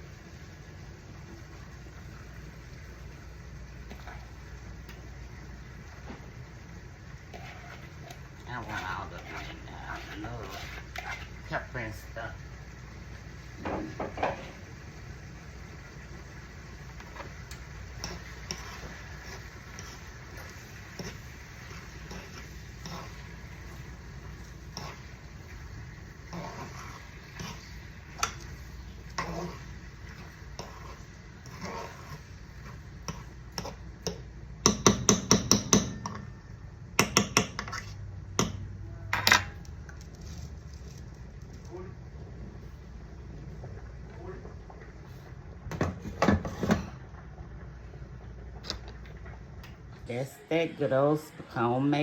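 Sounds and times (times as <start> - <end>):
spoon knocking against a pot: 34.1 - 36.3, 37.0 - 37.7.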